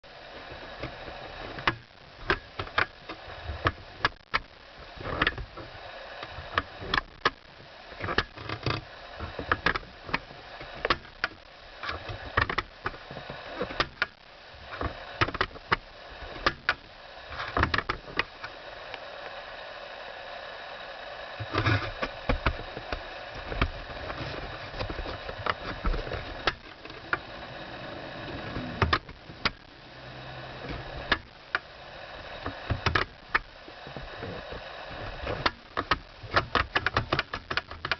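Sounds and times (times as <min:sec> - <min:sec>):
steady background noise: 0:00.0 - 0:37.9
seat backrest creaking: 0:21.4 - 0:37.9.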